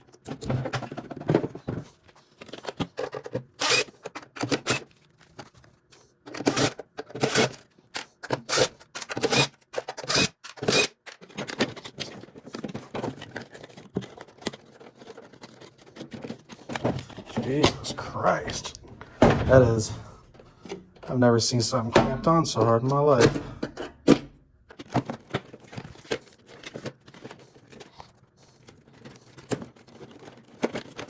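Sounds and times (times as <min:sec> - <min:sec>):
parts scraping and rattling: 0:00.0 - 0:31.0.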